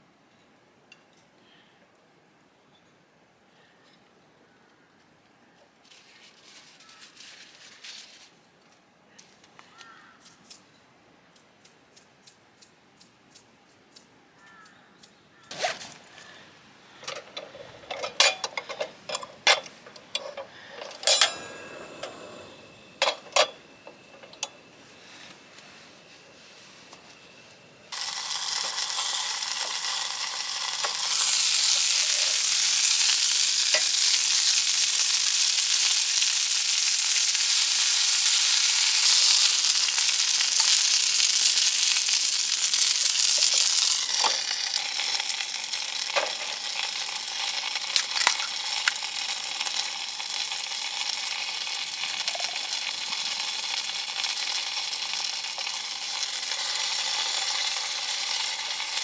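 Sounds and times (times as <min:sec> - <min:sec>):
chicken wings sizzling: 0:05.9 - 0:08.3, 0:27.9 - 0:59.0.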